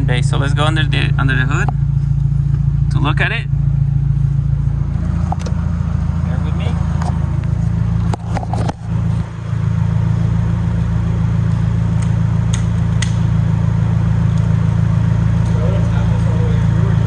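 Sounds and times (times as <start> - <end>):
car engine idling: 0.0 - 17.0
sharp clicks: 12.0 - 13.3.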